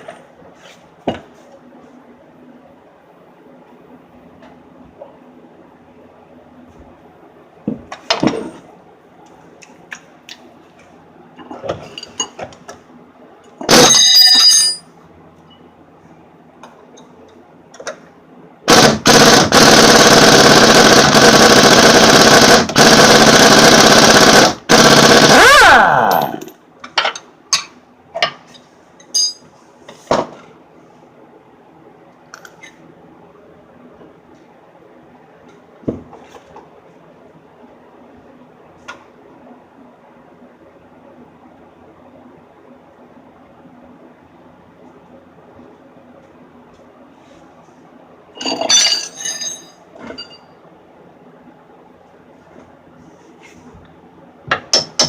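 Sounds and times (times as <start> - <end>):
impact wrench running: 18.7 - 26.4
tools clicking and knocking: 54.5 - 55.0.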